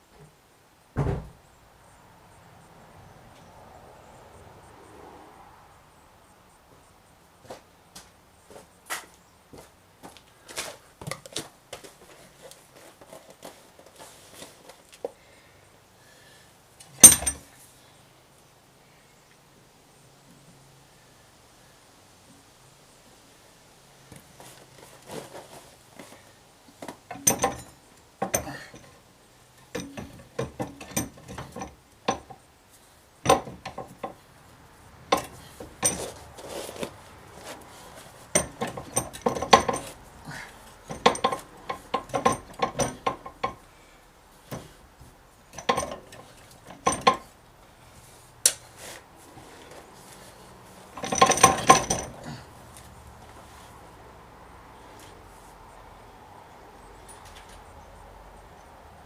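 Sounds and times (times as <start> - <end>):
metal tools clinking: 16.9 - 17.5, 27.1 - 29.0, 29.6 - 32.4, 35.1 - 36.9, 38.2 - 43.7, 45.5 - 47.3, 50.9 - 52.4.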